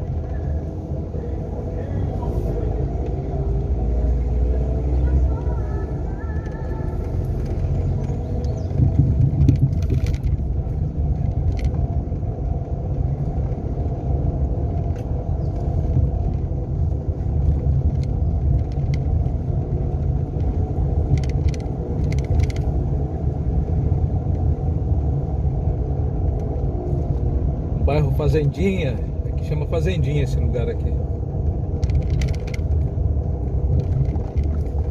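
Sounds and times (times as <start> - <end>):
car engine and road rumble: 0.0 - 34.9
faint clicks and rattles: 5.3 - 14.0, 14.6 - 22.9, 30.8 - 34.9.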